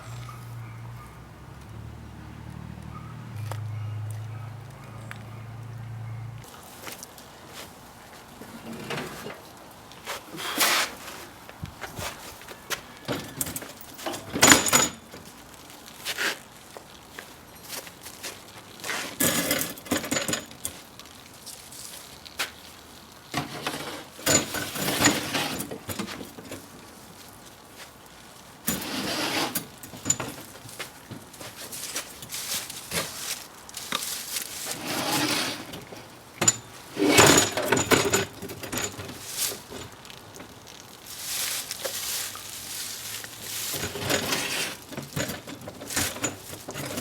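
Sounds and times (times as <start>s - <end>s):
scraping and rubbing metal: 23.4s - 26.1s, 28.7s - 30.4s, 34.5s - 40.0s, 41.3s - 47.0s.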